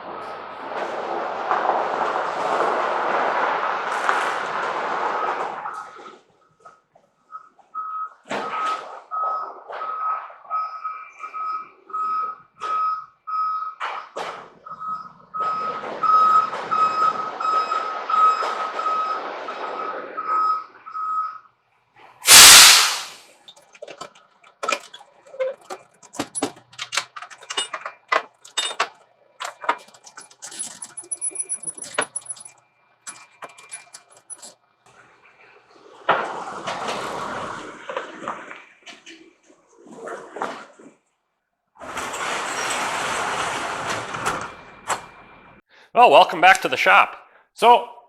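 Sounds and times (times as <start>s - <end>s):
back-up alarm beeping: 7.3s - 13.8s, 14.7s - 21.5s
loud hiss-like burst: 22.2s - 23.2s
engine noise: 22.3s - 23.2s.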